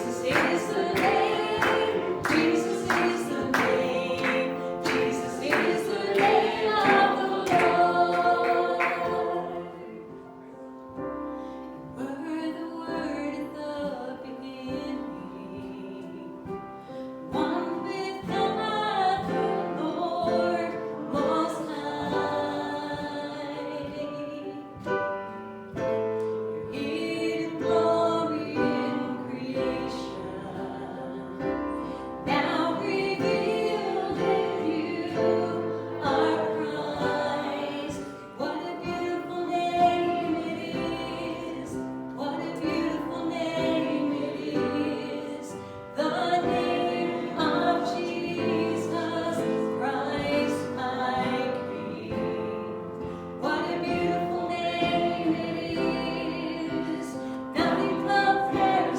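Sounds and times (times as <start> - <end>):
sharp rhythmic strokes: 0.0 - 10.0
group singing gospel song: 0.0 - 58.9.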